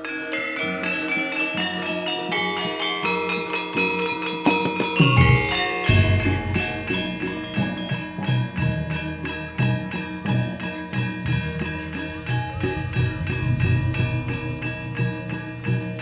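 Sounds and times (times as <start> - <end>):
metal gong-chimes ringing: 0.0 - 16.0
drum strokes: 4.5 - 8.9, 11.2 - 16.0.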